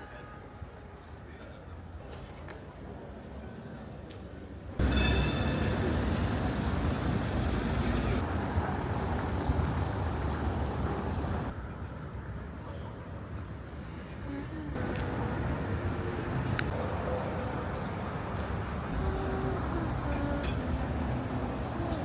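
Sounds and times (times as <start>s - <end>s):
street traffic rumbling: 4.8s - 22.0s.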